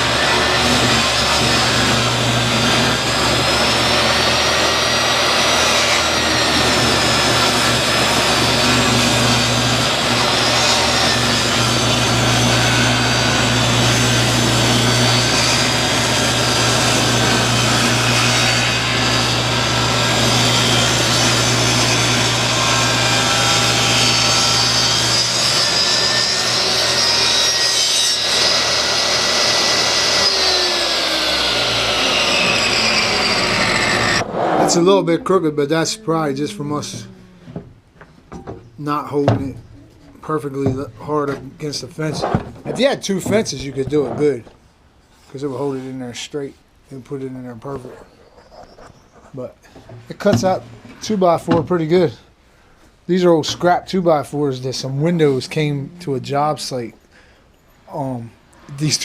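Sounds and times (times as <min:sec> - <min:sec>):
table saw cutting wood: 0:00.0 - 0:37.7, 0:50.1 - 0:52.2, 0:53.2 - 0:57.0.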